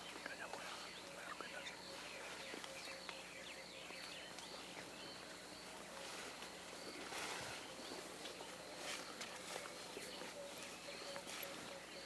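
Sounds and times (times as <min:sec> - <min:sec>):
bird chirps: 0:00.0 - 0:12.0.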